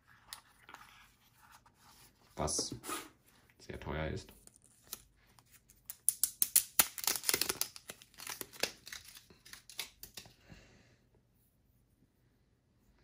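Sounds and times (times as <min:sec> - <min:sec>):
packaging crinkling: 0:05.7 - 0:10.2.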